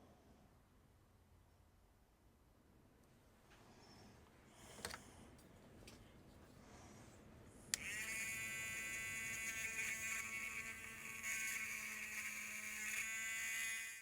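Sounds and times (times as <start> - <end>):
electric motor buzzing: 7.7 - 14.0.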